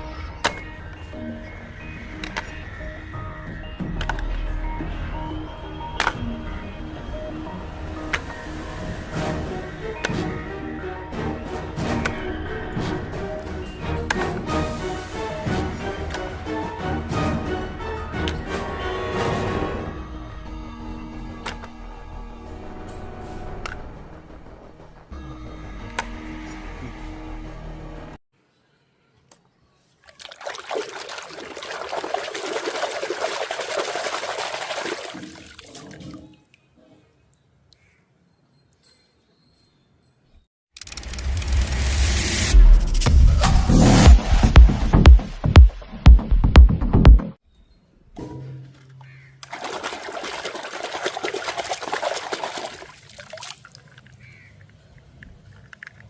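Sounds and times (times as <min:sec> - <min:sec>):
water running and splashing: 0:30.0 - 0:36.4, 0:49.4 - 0:54.4.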